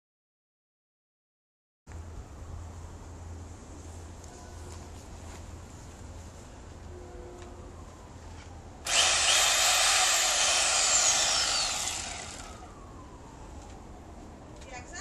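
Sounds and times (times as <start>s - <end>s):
chainsaw revving: 8.8s - 12.6s.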